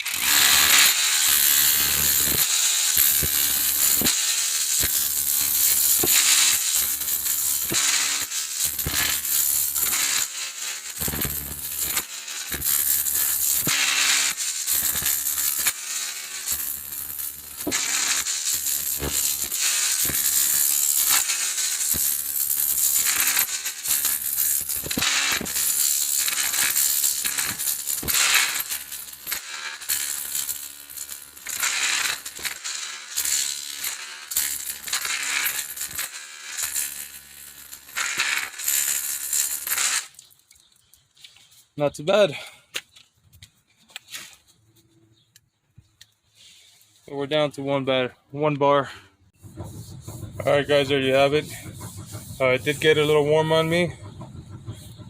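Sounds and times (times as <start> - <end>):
rotary hammer pounding: 0.0 - 4.2, 4.8 - 10.3, 16.4 - 32.6, 49.3 - 55.0.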